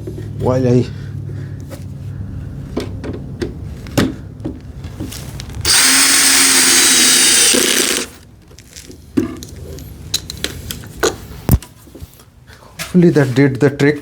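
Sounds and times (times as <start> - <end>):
cordless drill driving screw: 5.6 - 8.2.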